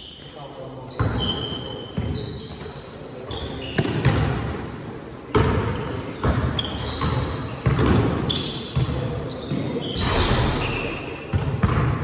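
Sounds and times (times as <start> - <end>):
sneakers squeaking: 0.3 - 12.0
sudden thumps: 10.0 - 11.4.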